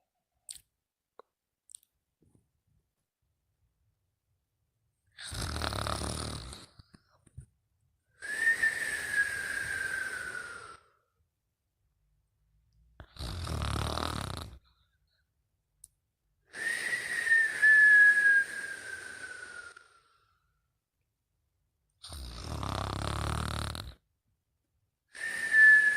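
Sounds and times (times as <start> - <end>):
person snoring: 5.2 - 6.8, 13.0 - 14.7, 16.5 - 20.2, 22.0 - 24.0.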